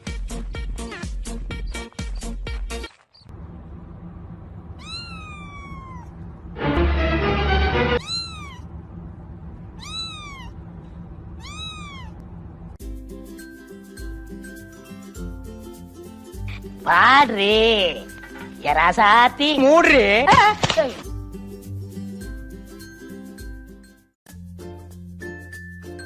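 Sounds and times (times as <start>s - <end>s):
cat meowing: 4.8s - 6.2s, 8.0s - 8.7s, 9.8s - 10.6s, 11.4s - 12.2s.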